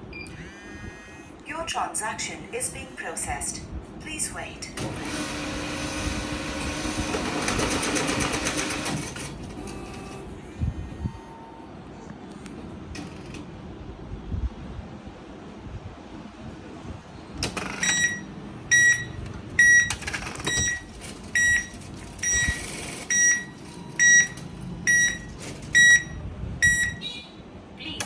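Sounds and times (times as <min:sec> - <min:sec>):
atm beeping: 0:04.8 - 0:11.8, 0:12.8 - 0:13.6, 0:17.4 - 0:27.3.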